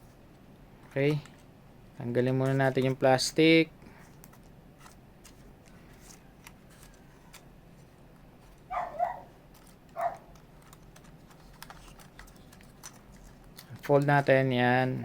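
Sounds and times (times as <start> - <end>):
plastic wrapping rustling: 3.9 - 14.9
dog barking: 8.7 - 9.3, 10.0 - 10.3.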